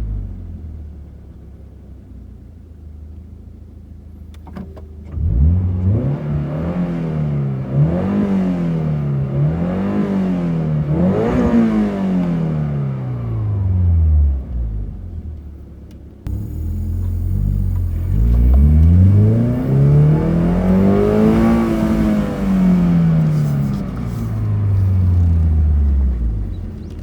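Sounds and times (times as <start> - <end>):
car engine revving: 5.1 - 15.1, 16.3 - 27.0.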